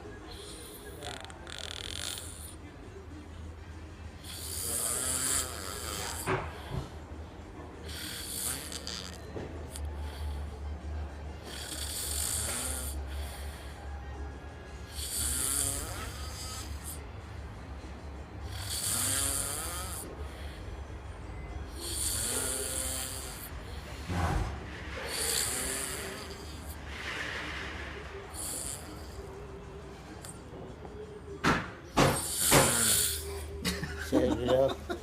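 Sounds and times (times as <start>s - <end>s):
lizard snoring: 0.3s - 2.6s, 4.2s - 6.7s, 7.8s - 10.5s, 11.4s - 13.9s, 14.8s - 17.0s, 18.4s - 20.5s, 21.7s - 27.2s, 28.2s - 29.5s, 32.0s - 33.4s.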